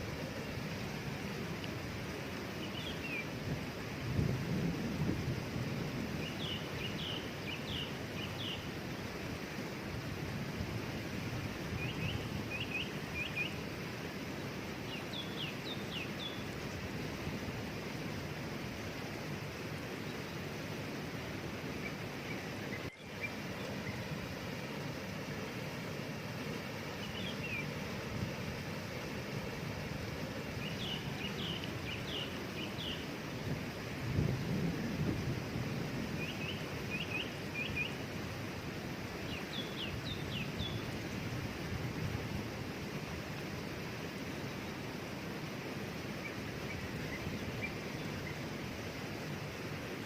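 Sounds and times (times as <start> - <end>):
waterfall rushing: 0.0 - 50.0
bird singing: 2.6 - 3.3, 6.2 - 8.7, 11.8 - 13.6, 14.9 - 16.5, 21.8 - 24.1, 27.0 - 27.8, 30.6 - 33.0, 36.2 - 38.0, 39.3 - 40.9.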